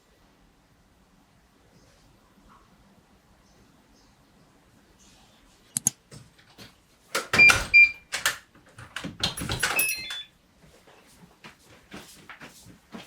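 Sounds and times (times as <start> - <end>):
sharp clicks: 5.7 - 6.0.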